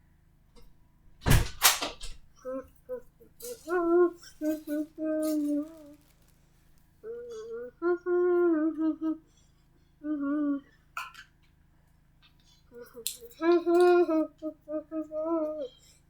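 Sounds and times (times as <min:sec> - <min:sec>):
child humming: 0:02.4 - 0:06.1, 0:07.0 - 0:09.3, 0:10.0 - 0:10.8, 0:12.8 - 0:15.9.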